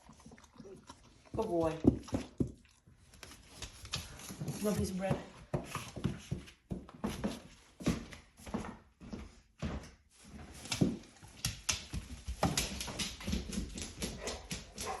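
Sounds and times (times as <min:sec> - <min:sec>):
dog chewing food: 0:00.0 - 0:06.4.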